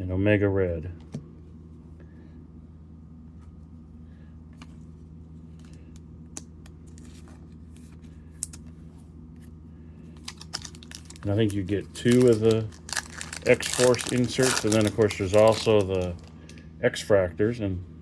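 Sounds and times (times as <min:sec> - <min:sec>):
trading cards clicking and sliding: 0:10.2 - 0:16.4.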